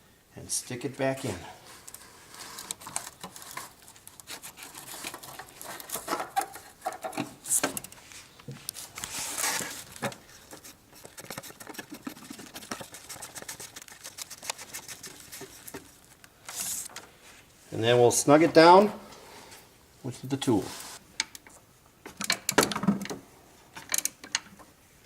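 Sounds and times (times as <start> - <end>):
rustling: 1.2 - 19.7, 20.5 - 21.6
small parts clicking and scraping: 1.7 - 17.1, 21.2 - 24.7.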